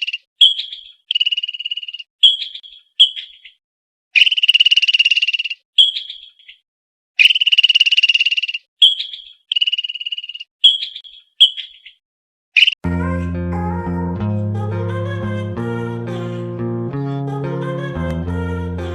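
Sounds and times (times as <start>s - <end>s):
guitar music: 12.8s - 18.9s.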